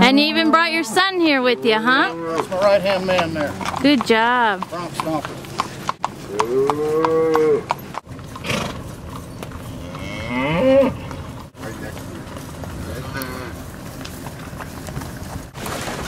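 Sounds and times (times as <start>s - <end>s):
cows mooing: 0.0s - 8.8s, 9.6s - 11.3s, 12.7s - 13.7s.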